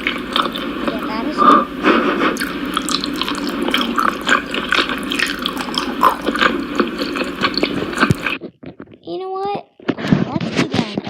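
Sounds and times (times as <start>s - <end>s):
liquid dripping and splashing: 2.4s - 8.3s.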